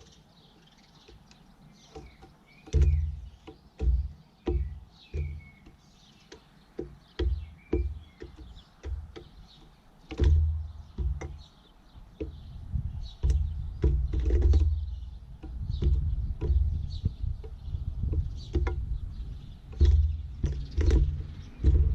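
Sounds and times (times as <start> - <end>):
faint bird chirps: 0.0 - 21.9
low rumbling thumps: 2.0 - 5.6, 10.2 - 21.9.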